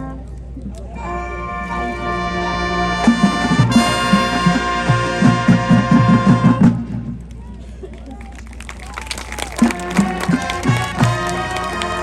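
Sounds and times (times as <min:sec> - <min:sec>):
marching band brass chord: 0:01.1 - 0:06.7, 0:09.0 - 0:12.0.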